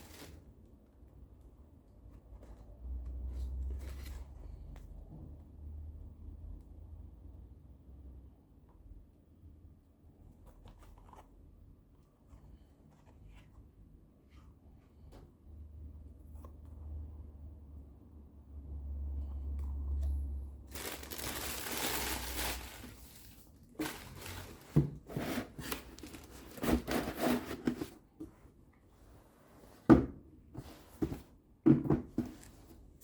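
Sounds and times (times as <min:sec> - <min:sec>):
packaging crinkling: 0:20.7 - 0:24.8.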